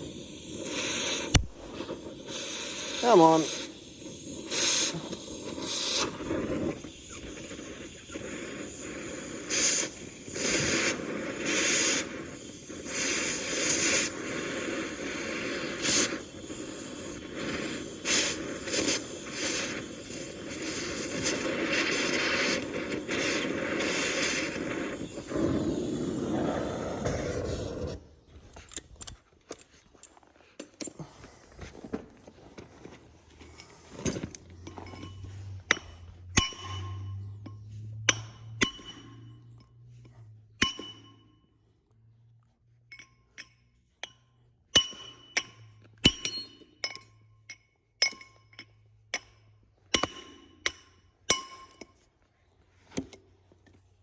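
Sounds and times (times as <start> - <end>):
hammer striking metal: 34.9 - 39.3, 40.6 - 41.2, 44.8 - 47.0, 50.0 - 51.9.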